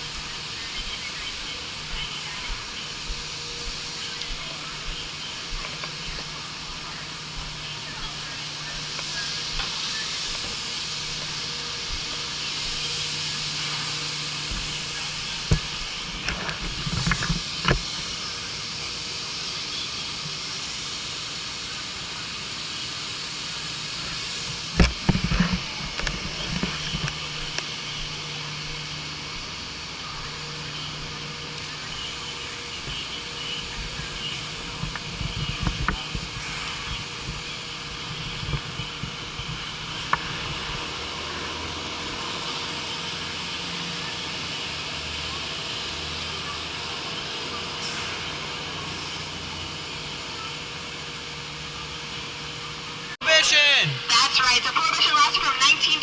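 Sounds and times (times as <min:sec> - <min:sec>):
steady hiss: 0:00.0 - 0:56.0
low even hum: 0:22.9 - 0:45.3.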